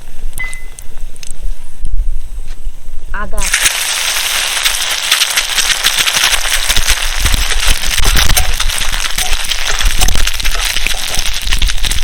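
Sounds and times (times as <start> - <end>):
spices sizzling in hot oil: 3.4 - 12.0.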